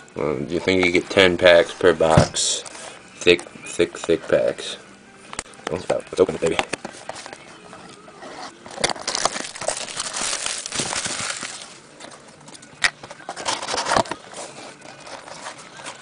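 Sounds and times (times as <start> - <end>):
cardboard and wrapping ripping: 8.4 - 11.8.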